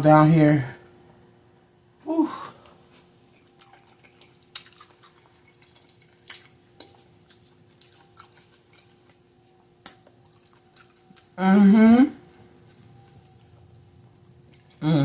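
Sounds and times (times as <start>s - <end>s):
chewing smacks and clicks: 3.3s - 9.2s, 9.8s - 11.4s.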